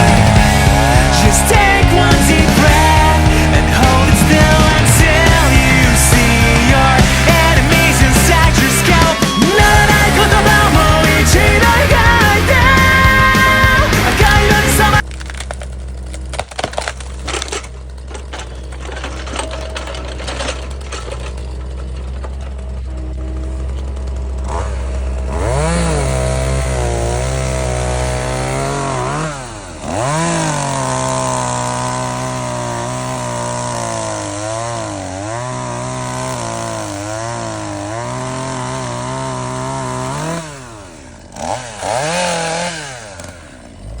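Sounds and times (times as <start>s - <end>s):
low engine hum: 0.0s - 29.7s
chainsaw revving: 0.0s - 44.0s
clicks and knocks: 15.0s - 23.9s.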